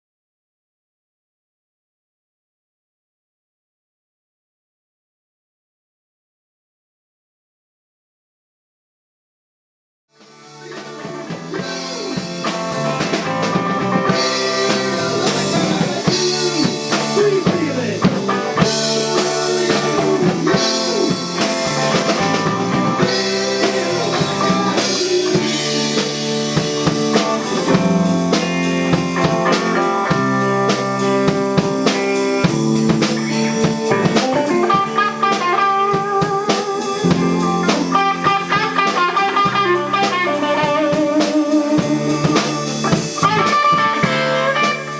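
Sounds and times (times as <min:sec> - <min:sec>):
drum kit playing: 0:10.2 - 0:44.9
overdriven electric guitar solo: 0:10.4 - 0:44.9.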